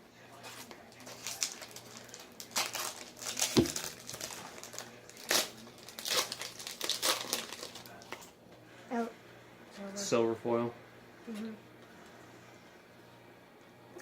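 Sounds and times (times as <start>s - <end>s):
card pack wrappers crinkling: 0.9s - 8.2s.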